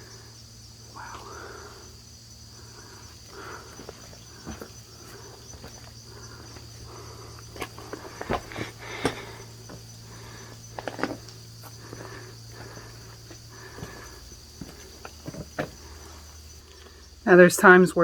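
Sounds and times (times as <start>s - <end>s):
insects droning: 0.0s - 18.0s
footsteps on rocks: 3.2s - 16.4s.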